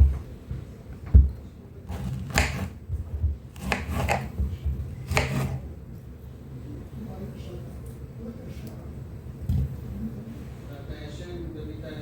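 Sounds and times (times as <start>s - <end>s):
short scrapes: 1.9s - 2.7s.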